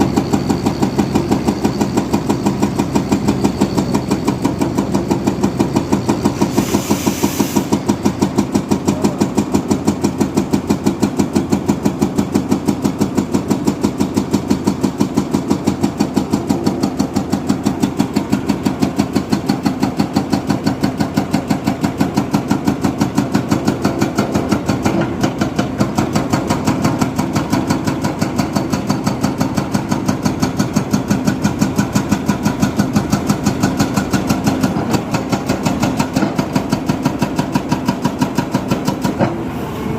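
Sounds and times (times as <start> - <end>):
diesel engine chugging: 0.0 - 39.9
short hiss: 6.4 - 7.8.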